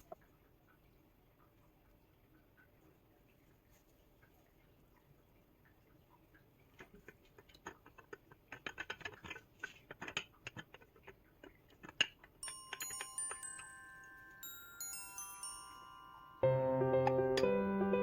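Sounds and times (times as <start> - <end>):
light clicks and taps: 0.0 - 13.7
mallet percussion music: 12.4 - 18.0.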